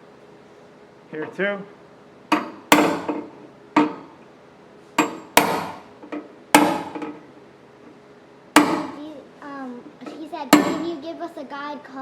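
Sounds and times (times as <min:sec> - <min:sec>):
hammer tapping sheet metal: 0:02.3 - 0:04.1, 0:05.0 - 0:07.2, 0:08.6 - 0:09.0, 0:10.6 - 0:11.0.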